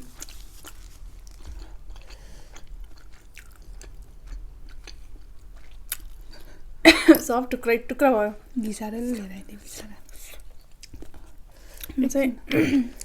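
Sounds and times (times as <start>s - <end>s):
person chewing noodles: 0.0s - 6.8s, 10.0s - 12.0s.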